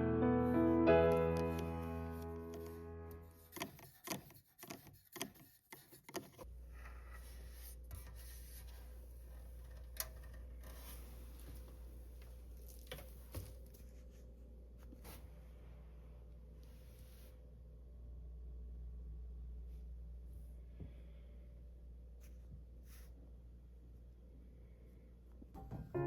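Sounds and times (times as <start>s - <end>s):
low steady hum: 6.4s - 26.0s.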